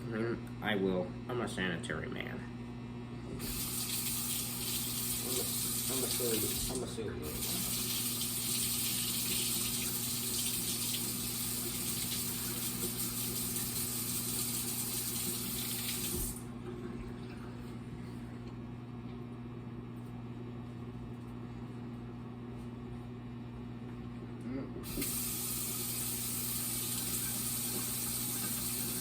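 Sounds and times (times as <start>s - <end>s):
microwave oven humming: 0.0s - 29.0s
tap running into sink: 15.4s - 16.4s.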